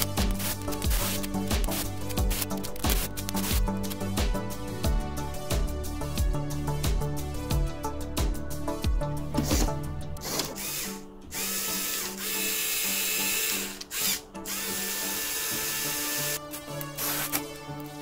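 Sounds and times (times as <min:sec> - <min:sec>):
background music: 0:00.0 - 0:18.0
small electric motor whirring: 0:10.5 - 0:17.5.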